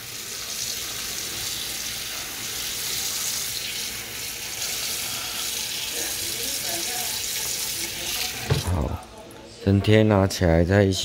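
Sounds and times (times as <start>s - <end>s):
tap running into pot of water: 8.2s - 8.9s.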